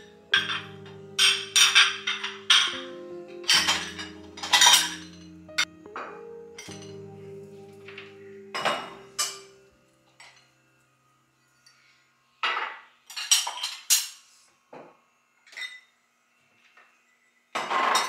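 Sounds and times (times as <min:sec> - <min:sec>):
dishes and cutlery clinking: 0:00.0 - 0:10.5, 0:11.6 - 0:14.9, 0:17.6 - 0:18.0
steady low tone: 0:00.0 - 0:12.4.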